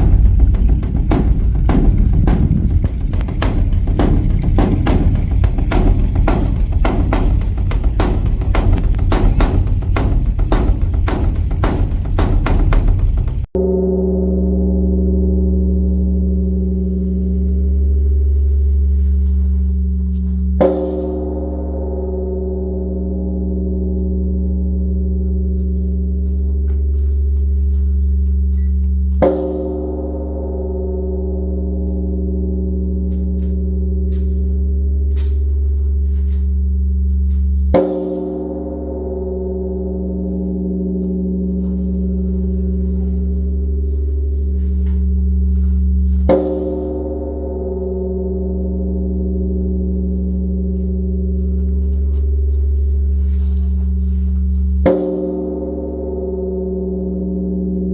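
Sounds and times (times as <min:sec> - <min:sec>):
large temple bell struck: 0:00.0 - 0:57.9.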